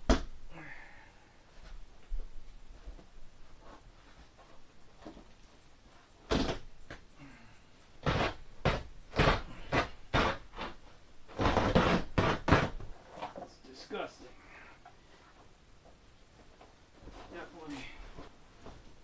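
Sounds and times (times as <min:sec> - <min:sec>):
carpet tearing: 0:08.0 - 0:12.9.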